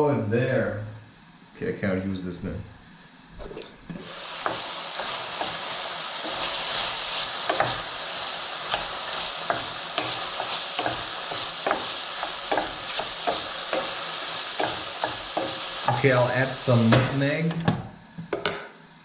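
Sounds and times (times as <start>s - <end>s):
food sizzling in a frying pan: 3.9s - 17.5s
spoon scraping a pan: 4.0s - 16.2s.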